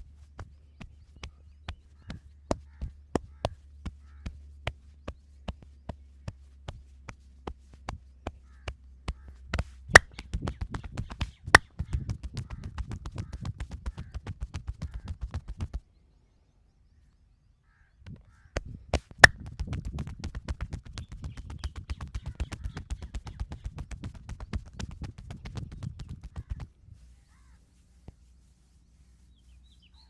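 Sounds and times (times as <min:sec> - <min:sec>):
hands slapping body: 0:09.1 - 0:15.2.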